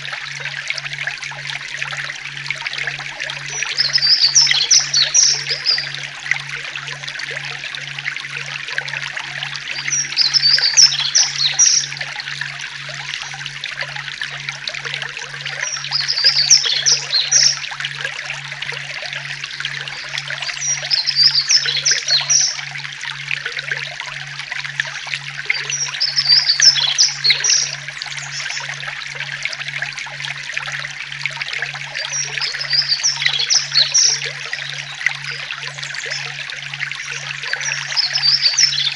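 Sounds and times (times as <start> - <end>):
stream trickling: 0.0 - 38.9
songbird chirping: 9.7 - 12.0, 25.6 - 28.7.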